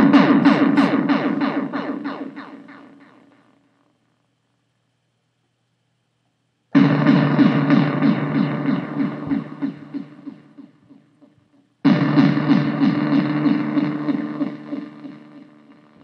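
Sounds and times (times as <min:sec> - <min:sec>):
pulsing analog synthesizer tone: 0:00.0 - 0:03.5, 0:06.8 - 0:11.3, 0:11.9 - 0:16.0.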